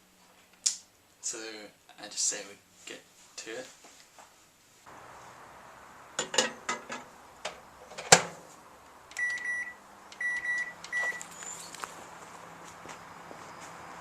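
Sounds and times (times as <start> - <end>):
low steady hum: 4.9 - 14.0
high keypad beeps: 9.2 - 11.7.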